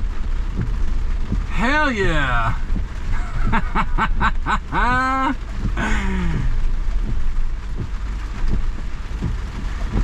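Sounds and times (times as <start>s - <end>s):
engine running low: 0.0s - 10.0s
rain: 0.0s - 10.0s
man whooping and yelling: 4.7s - 5.4s.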